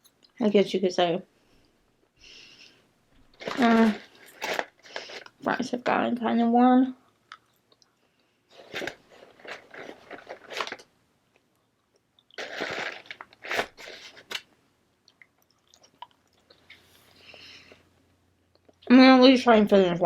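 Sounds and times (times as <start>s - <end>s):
chewing french fries: 7.1s - 14.4s, 15.0s - 17.8s, 18.5s - 18.9s.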